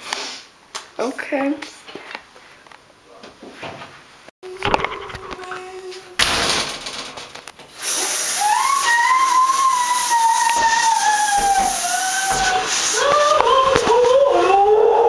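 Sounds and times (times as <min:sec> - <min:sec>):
shower spray hissing: 0:07.7 - 0:14.5.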